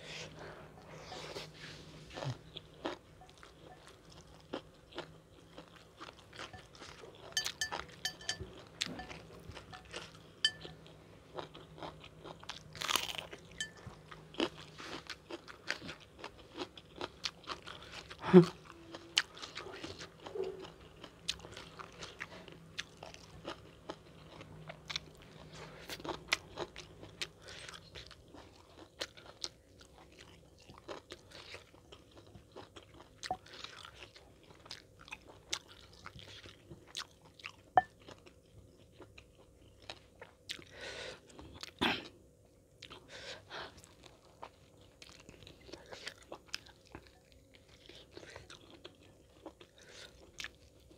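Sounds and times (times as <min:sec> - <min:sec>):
crunching and chewing food: 0:00.2 - 0:50.9.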